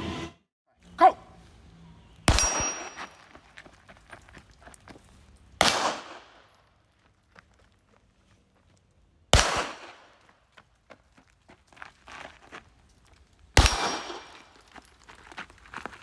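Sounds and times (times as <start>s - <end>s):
pistol shots: 2.3s - 3.1s, 5.6s - 6.5s, 9.3s - 10.2s, 13.6s - 14.5s.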